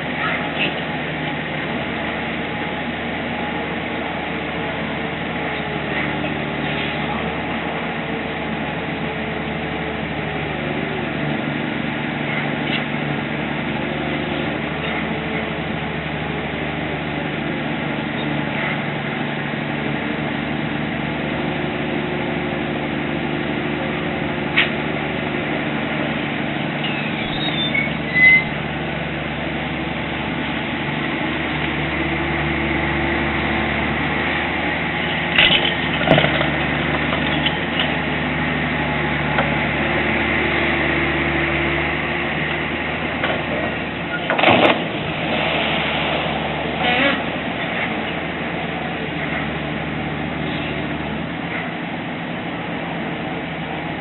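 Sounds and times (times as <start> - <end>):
engine drone: 0.0 - 54.0.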